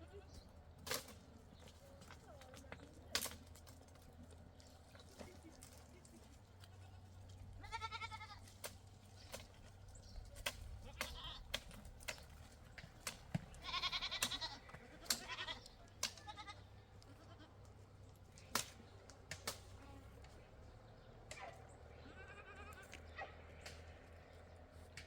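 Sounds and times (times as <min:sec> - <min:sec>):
sheep bleating: 0:06.6 - 0:08.5, 0:13.6 - 0:17.6, 0:21.9 - 0:23.4.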